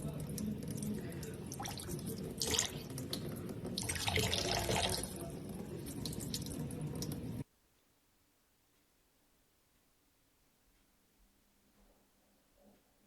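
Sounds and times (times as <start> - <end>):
water running and splashing: 0.0 - 7.4.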